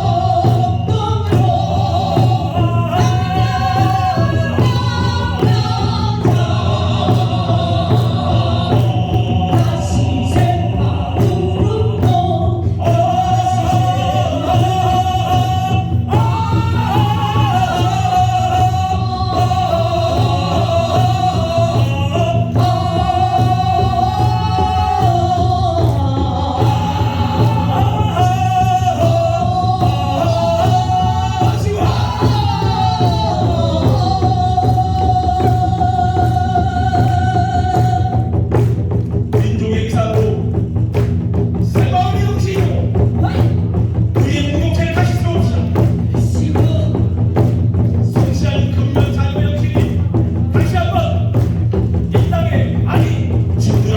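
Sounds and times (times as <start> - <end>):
person singing long notes: 0.0 - 38.4
drum beats: 0.0 - 53.9.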